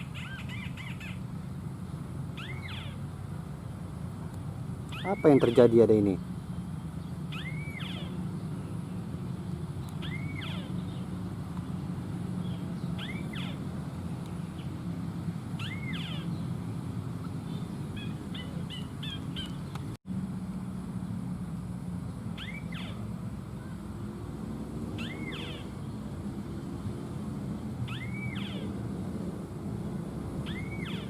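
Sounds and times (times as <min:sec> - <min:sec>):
whistled bird call: 0:02.4 - 0:03.0, 0:04.9 - 0:05.6, 0:07.3 - 0:08.2, 0:10.0 - 0:10.8, 0:15.6 - 0:16.3, 0:22.4 - 0:23.0, 0:25.0 - 0:25.7, 0:27.9 - 0:28.7, 0:30.4 - 0:31.0
quick bird chirps: 0:09.9 - 0:11.1.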